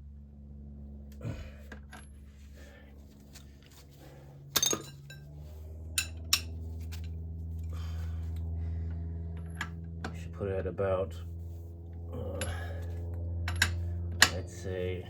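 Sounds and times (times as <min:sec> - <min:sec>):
steady low hum: 0:00.0 - 0:15.0
metal hand tools clinking: 0:04.6 - 0:05.2.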